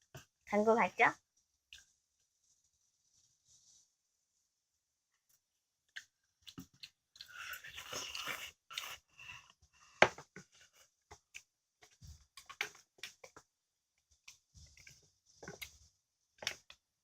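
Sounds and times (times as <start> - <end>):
person chewing noodles: 5.9 - 13.4.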